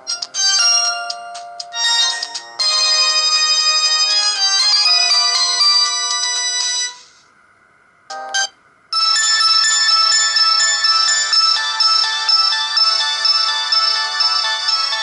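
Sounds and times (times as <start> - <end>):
phone ringtone melody: 0.0 - 7.1, 8.1 - 15.0.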